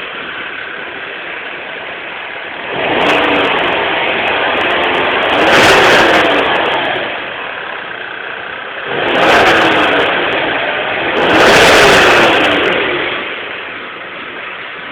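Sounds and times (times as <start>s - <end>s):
car engine revving: 0.0s - 14.9s.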